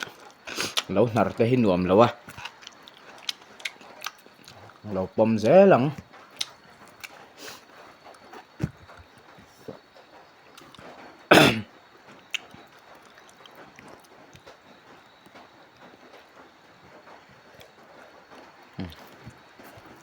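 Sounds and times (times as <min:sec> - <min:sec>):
mouth and eating clicks: 0:00.0 - 0:01.4, 0:02.1 - 0:04.8, 0:05.9 - 0:09.8, 0:10.5 - 0:10.9, 0:17.5 - 0:20.0
person coughing: 0:11.3 - 0:11.7.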